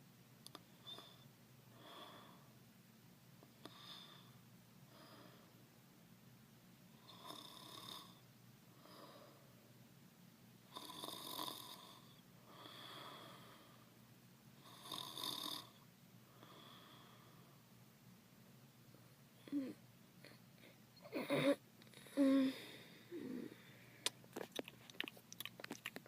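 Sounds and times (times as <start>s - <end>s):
person snoring: 21.1s - 23.7s.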